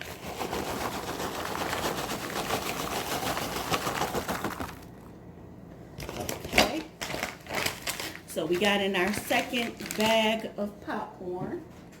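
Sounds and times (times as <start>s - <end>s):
popcorn poured into a bowl: 0.0s - 5.0s.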